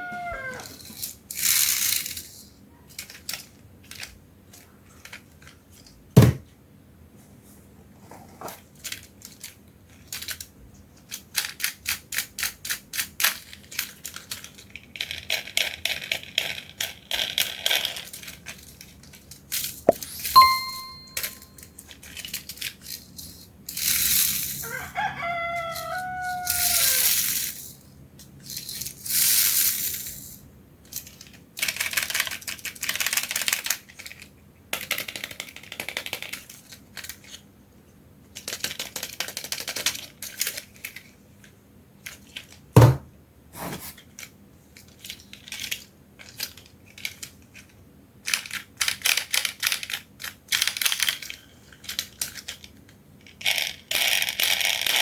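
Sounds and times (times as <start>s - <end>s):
hard knock: 42.8s - 43.1s.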